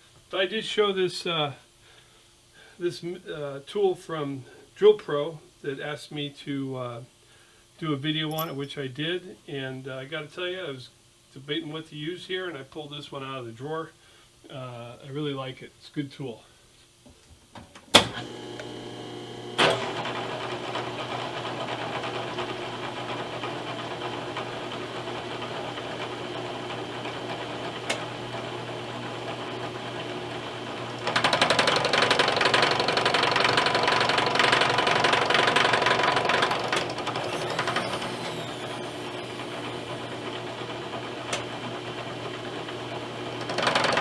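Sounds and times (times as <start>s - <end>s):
power tool humming: 18.2s - 20.1s, 35.9s - 44.0s
power tool cutting metal: 36.4s - 41.5s.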